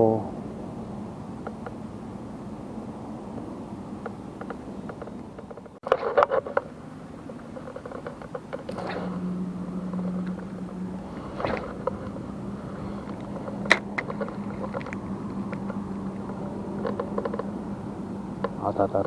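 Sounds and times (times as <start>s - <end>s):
boat engine humming: 0.0s - 19.0s
scattered clicks: 3.3s - 17.8s.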